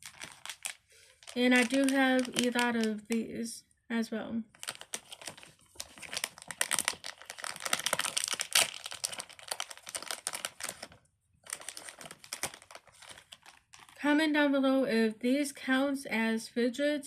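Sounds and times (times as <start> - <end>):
packaging crinkling and rustling: 0.0 - 3.2, 4.5 - 14.0.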